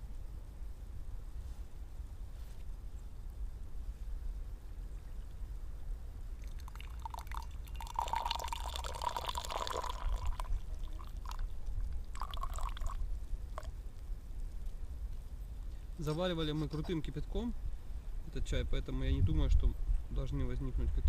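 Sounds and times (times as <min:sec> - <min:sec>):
liquid dripping: 0:06.4 - 0:13.8
tea pouring from teapot: 0:06.4 - 0:13.8.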